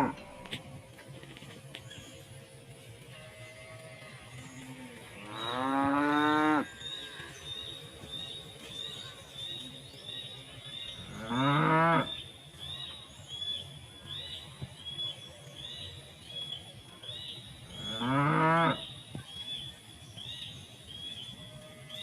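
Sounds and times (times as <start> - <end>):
cow mooing: 0.0 - 0.3, 3.1 - 6.8, 11.0 - 12.1, 17.8 - 18.8.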